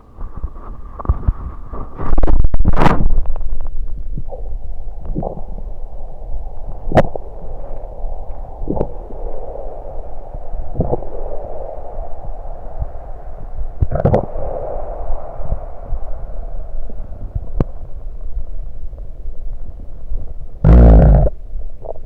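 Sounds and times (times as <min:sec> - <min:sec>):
steady rushing noise: 0:00.0 - 0:21.8
stomach gurgles: 0:00.0 - 0:22.0
soda gulps: 0:04.2 - 0:09.8.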